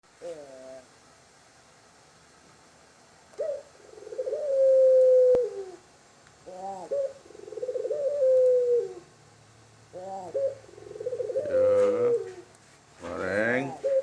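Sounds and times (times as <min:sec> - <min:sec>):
dove cooing: 0:00.2 - 0:00.9, 0:03.4 - 0:05.8, 0:06.4 - 0:09.1, 0:09.9 - 0:14.0.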